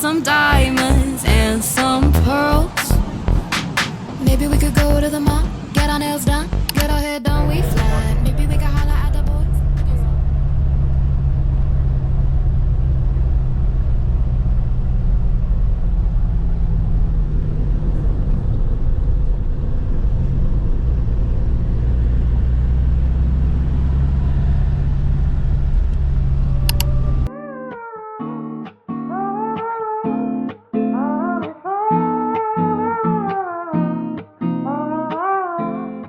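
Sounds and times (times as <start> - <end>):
motor vehicle rumbling: 0.5 - 27.3.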